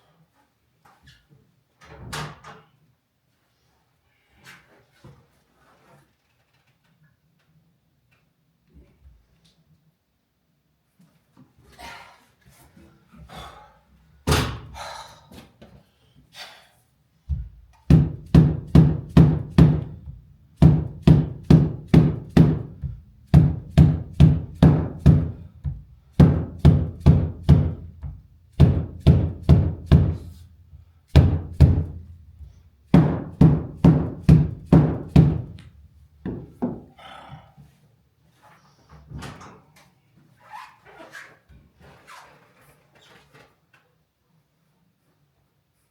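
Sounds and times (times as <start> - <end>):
heavy thumping knocks: 17.3 - 30.5, 31.1 - 36.9.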